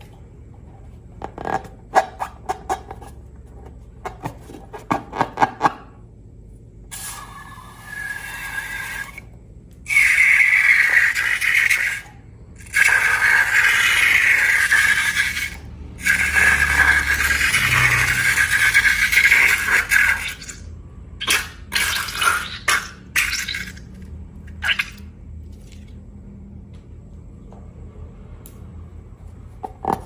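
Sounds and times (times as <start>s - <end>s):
liquid pouring: 21.2s - 25.1s.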